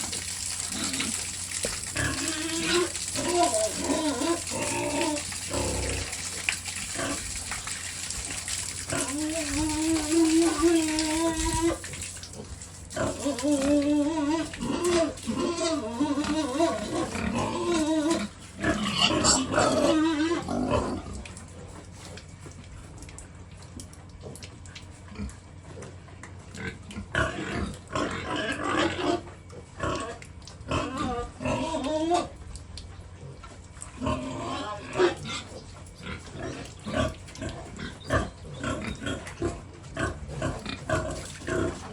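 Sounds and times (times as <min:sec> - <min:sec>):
pigs grunting and calling: 0:00.0 - 0:22.2, 0:24.2 - 0:32.5, 0:33.1 - 0:41.9.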